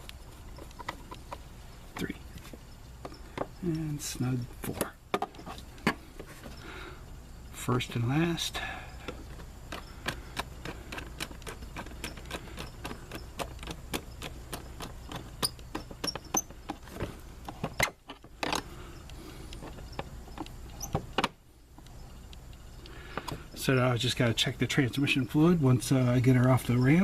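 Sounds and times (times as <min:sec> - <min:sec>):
hand ratchet clicking: 0:09.1 - 0:16.8.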